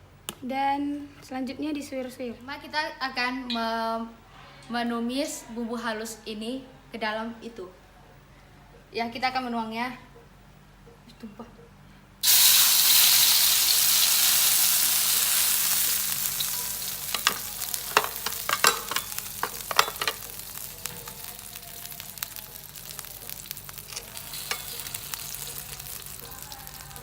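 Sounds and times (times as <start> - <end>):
paste sizzling in hot oil: 12.2 - 27.0
stirring clicks and scrapes in pan: 15.6 - 26.9.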